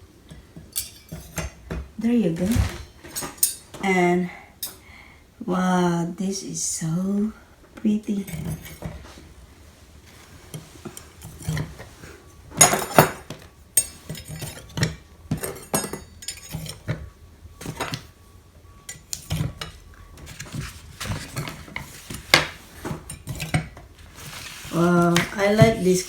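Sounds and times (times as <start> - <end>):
metal knives clinking: 0.7 - 1.4, 3.2 - 3.7, 13.8 - 16.8.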